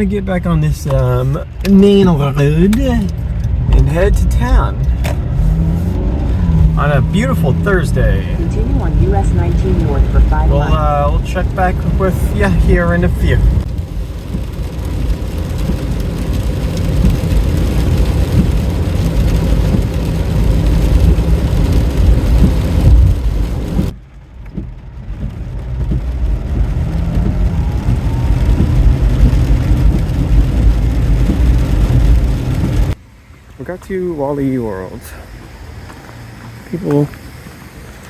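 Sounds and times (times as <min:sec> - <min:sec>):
car tyres and engine rumble: 0:00.0 - 0:38.0
faint rising engine whine: 0:02.2 - 0:12.3.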